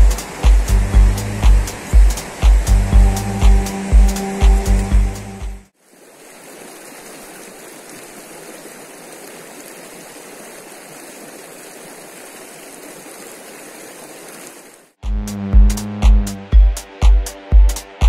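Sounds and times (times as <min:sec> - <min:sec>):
river rushing over rocks: 0:00.0 - 0:05.0, 0:05.8 - 0:14.9.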